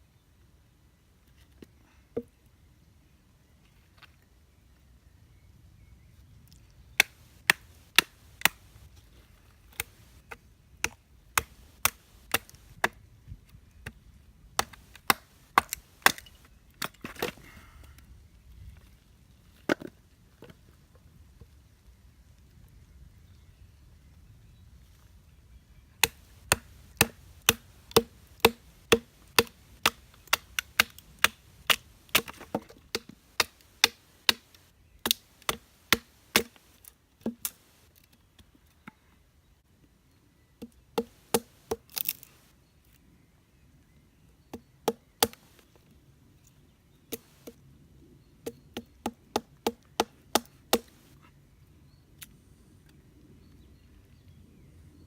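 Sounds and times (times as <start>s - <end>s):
wood being chopped: 7.0s - 8.9s, 9.7s - 13.0s, 14.6s - 17.4s, 26.0s - 37.8s, 40.6s - 42.3s, 44.5s - 45.6s, 48.4s - 51.1s.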